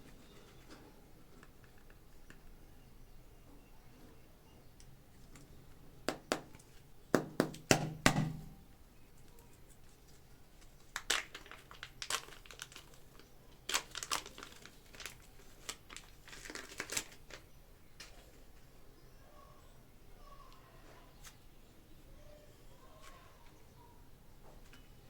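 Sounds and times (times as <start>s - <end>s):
plastic packaging crinkling and tearing: 10.6s - 17.5s.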